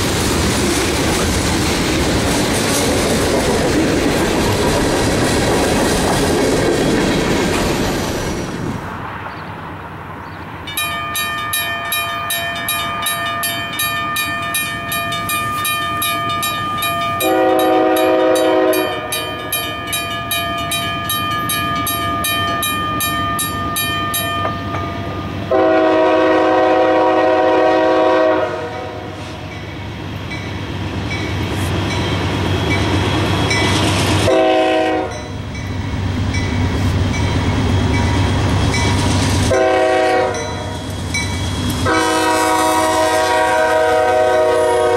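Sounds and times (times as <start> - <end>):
train rumble: 0.0 - 44.9
bell ringing rapidly: 10.7 - 25.3
locomotive air horn blasts: 17.2 - 19.3, 25.5 - 29.4, 34.2 - 35.2, 39.5 - 40.8, 41.8 - 44.9.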